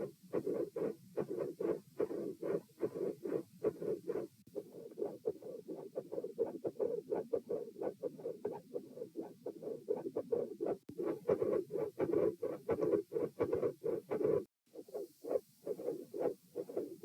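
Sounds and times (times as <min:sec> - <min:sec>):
fast muffled heartbeat: 0:00.0 - 0:17.0.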